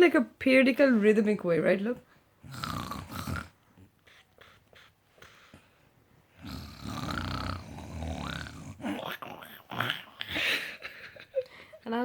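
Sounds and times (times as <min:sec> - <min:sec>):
person imitating snoring: 0:02.4 - 0:03.6, 0:06.4 - 0:10.4.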